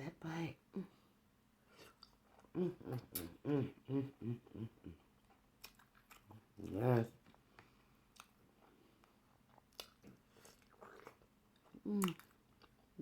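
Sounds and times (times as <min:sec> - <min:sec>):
person humming: 0:02.6 - 0:05.0
wet chewing sounds: 0:05.2 - 0:13.0.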